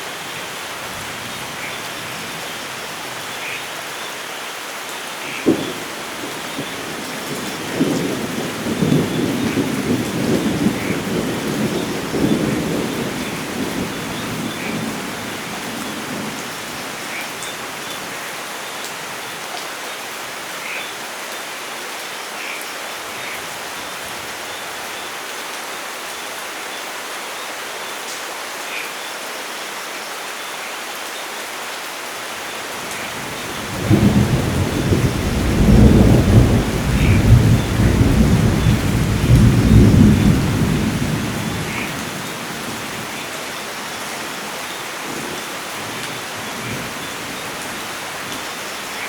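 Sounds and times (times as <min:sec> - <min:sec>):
steady rain falling: 0:00.0 - 0:49.0
rolling thunder: 0:05.5 - 0:16.4, 0:33.2 - 0:43.1.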